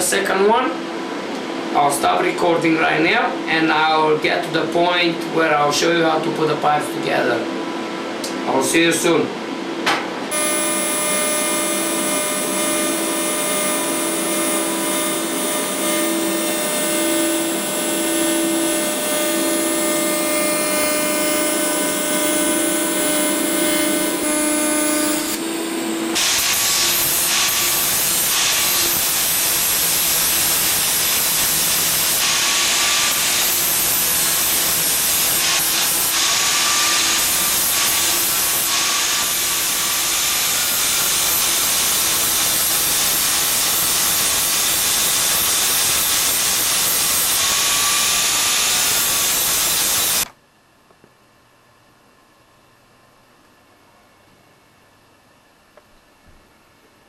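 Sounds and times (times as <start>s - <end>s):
power tool whining: 10.3s - 50.3s.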